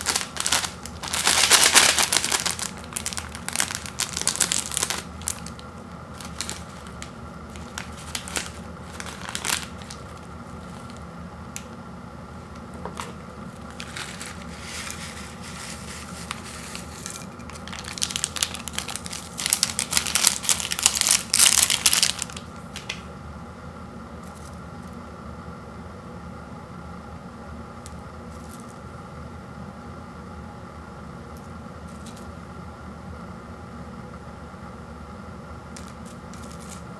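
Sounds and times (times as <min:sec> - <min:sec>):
plastic packaging crinkling: 0:00.0 - 0:11.7, 0:12.8 - 0:23.0, 0:31.9 - 0:32.3, 0:35.7 - 0:36.9.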